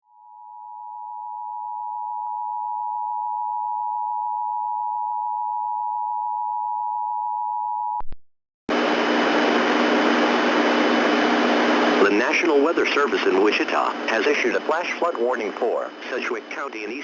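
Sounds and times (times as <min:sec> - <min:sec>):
loud hissing noise: 0:08.7 - 0:17.0.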